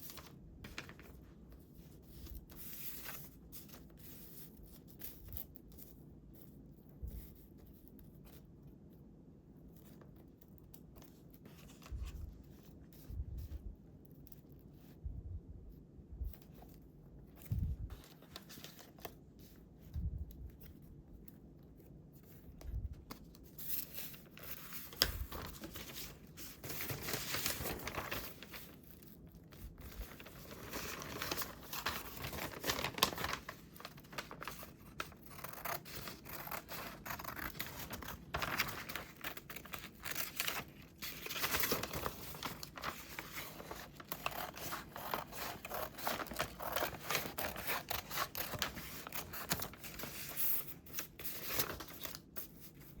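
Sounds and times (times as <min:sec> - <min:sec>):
paper rustling: 0:00.0 - 0:05.4, 0:17.4 - 0:20.0, 0:21.7 - 0:53.0
scissors snipping paper: 0:30.0 - 0:52.0.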